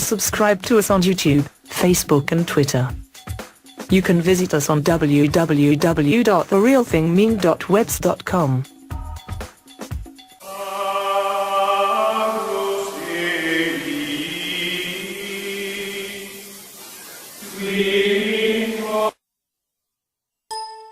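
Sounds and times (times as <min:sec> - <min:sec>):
voices singing a chant-like drone: 0:10.4 - 0:19.2.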